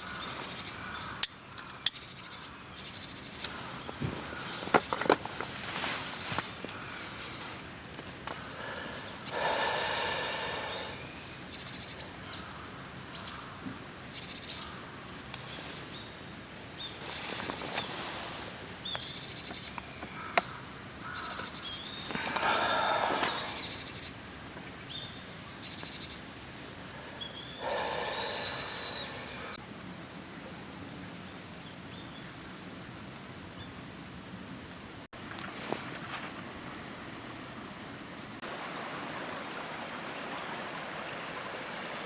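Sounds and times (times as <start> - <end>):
birds chirping and trilling: 0.0 - 5.2, 5.8 - 7.6, 8.3 - 13.6, 16.8 - 29.6
loud noisy bursts: 27.6 - 29.6.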